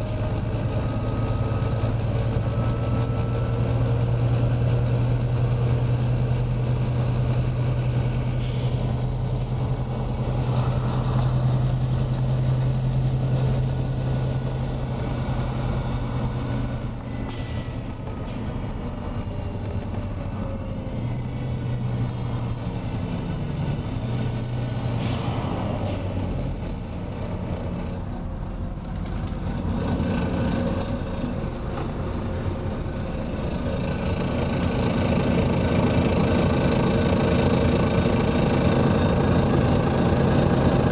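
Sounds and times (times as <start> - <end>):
bus diesel engine humming: 0.0 - 40.9
air brake hisses: 8.4 - 9.0, 17.2 - 18.7, 25.0 - 26.3.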